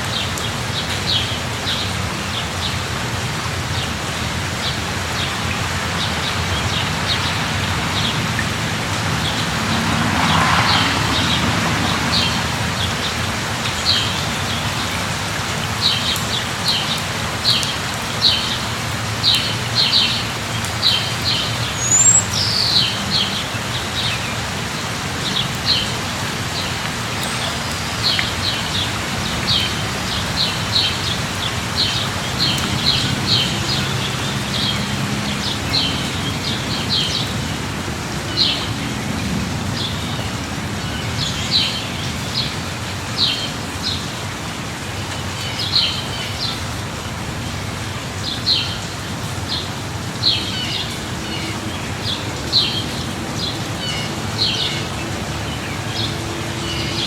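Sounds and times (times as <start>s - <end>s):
light rain falling: 0.0s - 57.0s
bird chirping: 21.8s - 23.0s.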